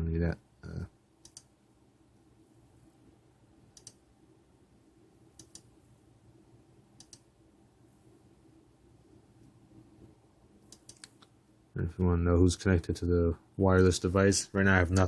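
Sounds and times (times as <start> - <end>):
faint low room hum: 0.0 - 15.0
computer mouse clicks: 1.2 - 1.5, 3.7 - 4.0, 5.4 - 5.8, 7.0 - 7.3, 10.6 - 11.4.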